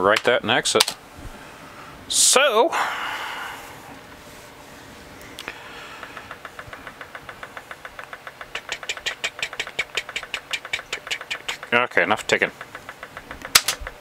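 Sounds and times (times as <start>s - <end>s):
sharp click: 6.0s - 11.8s, 12.6s - 14.0s
computer ticking rapidly: 6.0s - 14.0s.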